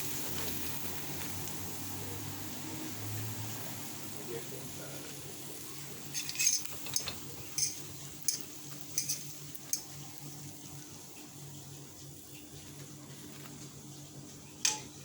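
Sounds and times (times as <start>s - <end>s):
metal utensil clinking on cookware: 6.0s - 9.9s, 14.6s - 15.0s.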